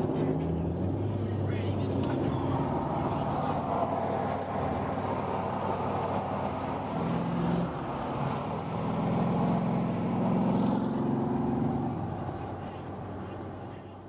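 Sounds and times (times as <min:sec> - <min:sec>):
road noise: 0:00.0 - 0:14.0.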